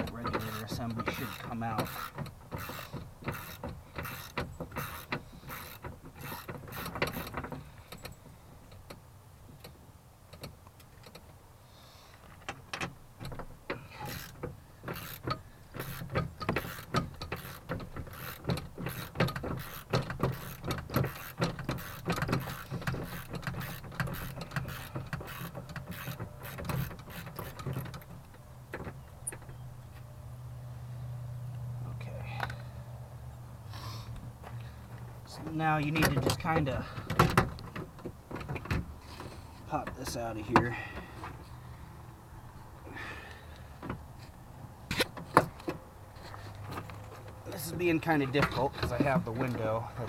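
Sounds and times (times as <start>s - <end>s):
hand ratchet clicking: 0.0s - 8.1s, 13.8s - 28.1s.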